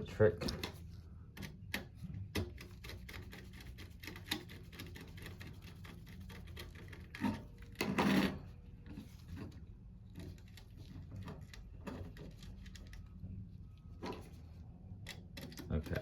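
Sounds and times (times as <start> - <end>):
scraping rasp: 2.4 - 9.4.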